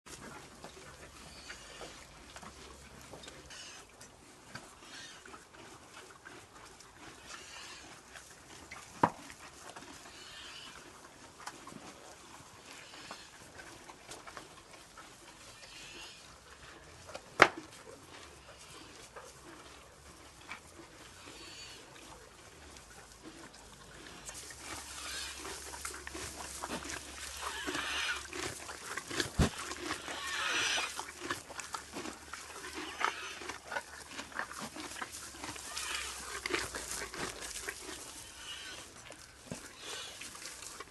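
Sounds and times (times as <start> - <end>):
pony rasping breaths: 18.2 - 40.9.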